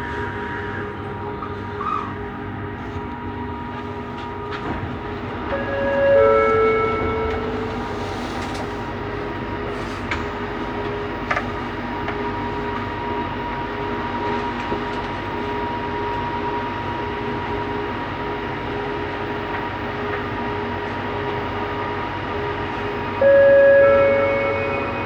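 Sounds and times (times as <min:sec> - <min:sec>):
train rolling noise: 0:00.0 - 0:25.0
loud electronic tone: 0:05.5 - 0:08.0, 0:23.2 - 0:25.0.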